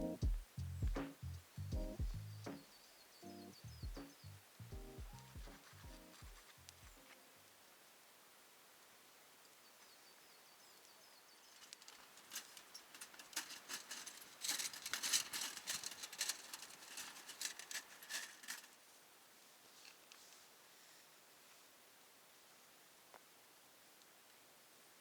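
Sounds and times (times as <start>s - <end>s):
dry twigs crackling and snapping: 11.6s - 18.8s.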